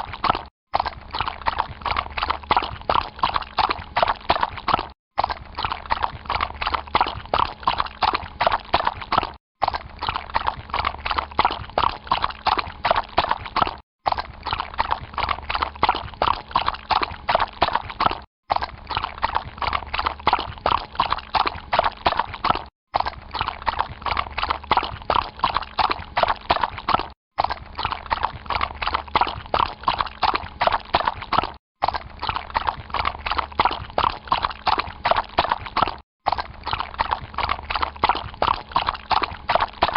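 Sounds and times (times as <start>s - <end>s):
horse hooves splashing in water: 0.0s - 39.9s.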